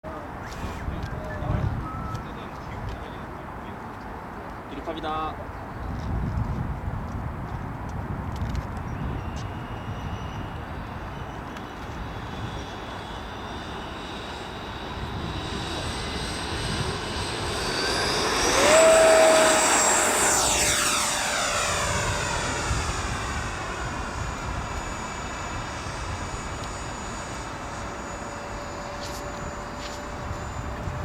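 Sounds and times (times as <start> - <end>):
model jet fan whining: 8.5 - 31.0.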